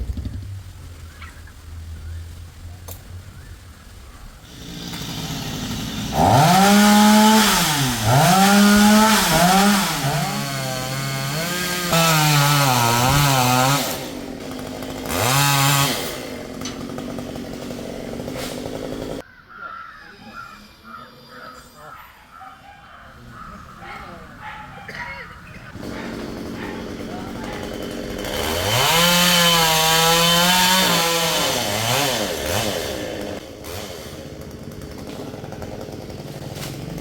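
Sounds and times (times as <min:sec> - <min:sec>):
chainsaw revving: 0:04.4 - 0:19.2, 0:25.7 - 0:37.0.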